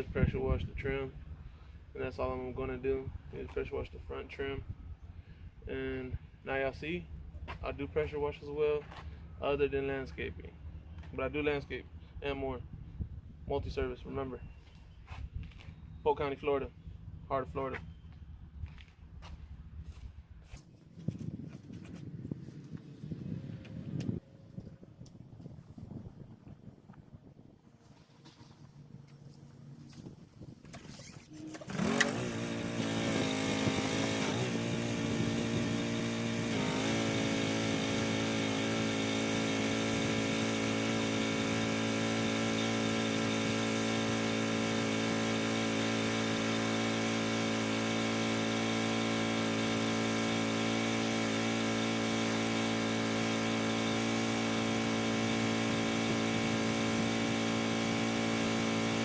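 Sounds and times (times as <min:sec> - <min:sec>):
small gasoline engine running: 0:31.0 - 0:59.0.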